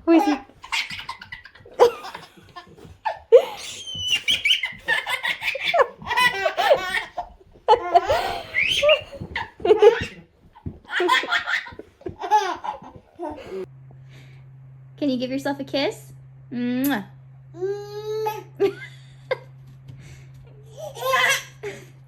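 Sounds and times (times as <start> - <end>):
baby laughing: 0.1 - 13.7, 20.6 - 21.8.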